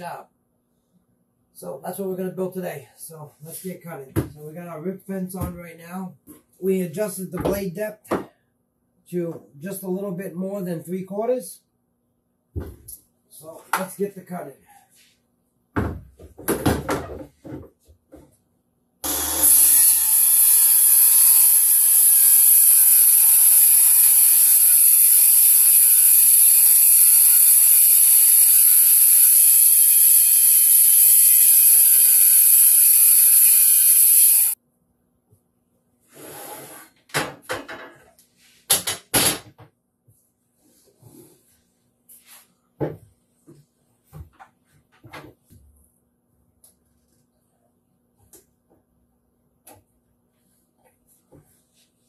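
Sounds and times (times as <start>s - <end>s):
circular saw cutting wood: 19.0s - 34.6s.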